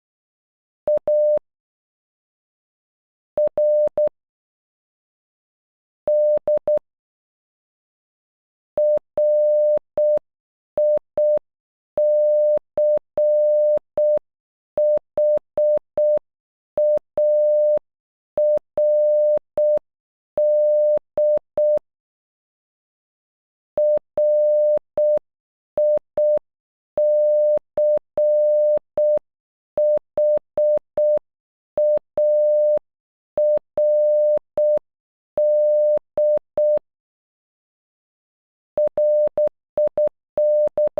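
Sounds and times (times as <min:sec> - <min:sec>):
morse code beeps: 0:18.4 - 0:19.8, 0:23.8 - 0:25.2, 0:27.0 - 0:29.2, 0:29.8 - 0:31.2, 0:31.8 - 0:32.8, 0:33.4 - 0:34.8, 0:35.4 - 0:36.8, 0:38.8 - 0:40.9.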